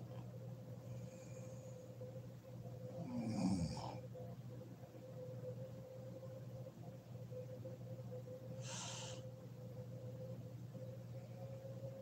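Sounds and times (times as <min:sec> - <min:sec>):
steady low hum: 0:00.0 - 0:12.0
woman breathing softly: 0:08.6 - 0:09.3.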